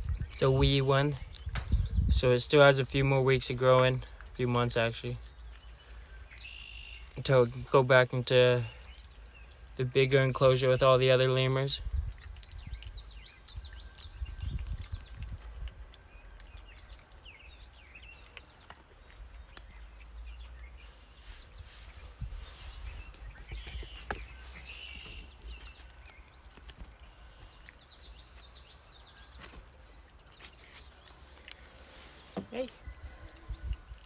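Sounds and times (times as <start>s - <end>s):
low wind rumble: 0.0s - 2.4s, 11.8s - 15.9s, 21.5s - 25.6s, 32.8s - 34.0s
small birds chirping: 0.0s - 34.0s.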